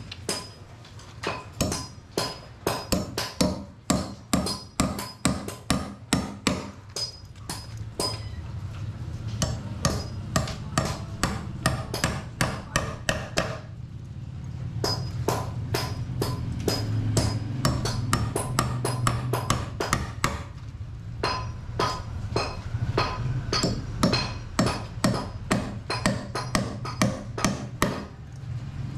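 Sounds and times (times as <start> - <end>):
hammer striking nails: 1.2 - 8.2, 9.4 - 13.7, 14.8 - 20.6, 21.2 - 28.1.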